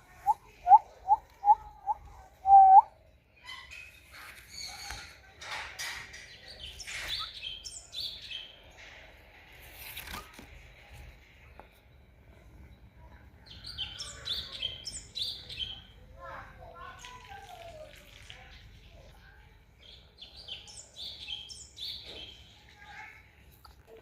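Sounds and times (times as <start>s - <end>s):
birds calling: 0.0s - 5.2s.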